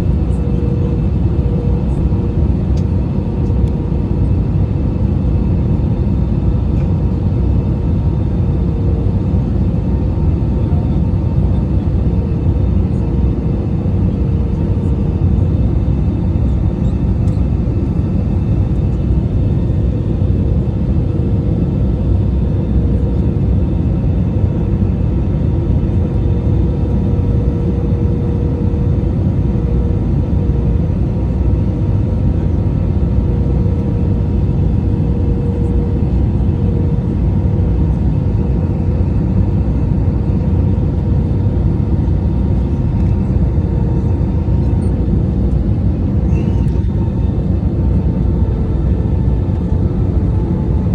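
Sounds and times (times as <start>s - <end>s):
steady cabin hum: 0.0s - 4.6s, 24.5s - 39.4s, 45.0s - 50.9s
engine and airflow rumble: 0.0s - 50.9s.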